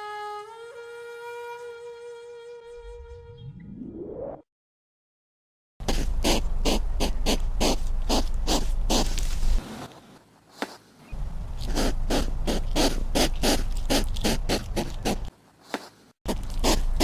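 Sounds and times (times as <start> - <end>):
hedgehog puffing and snuffling: 5.8 - 9.8, 11.6 - 17.0.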